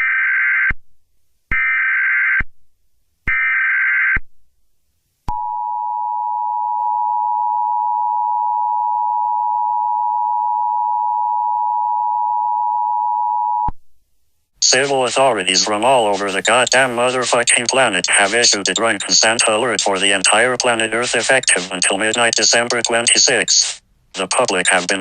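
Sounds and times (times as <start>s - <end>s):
data burst tones: 14.6s - 25.0s.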